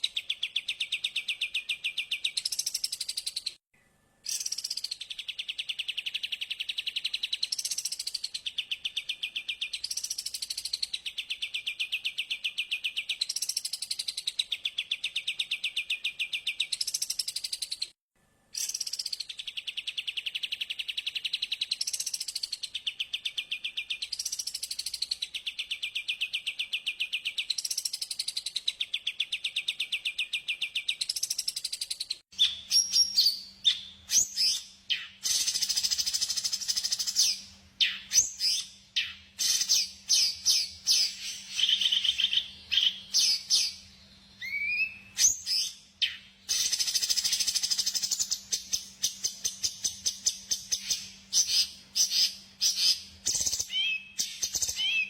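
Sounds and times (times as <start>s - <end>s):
bird chirps and calls: 0.0s - 3.6s, 4.2s - 18.0s, 18.6s - 55.0s
high bird trill: 32.3s - 55.0s.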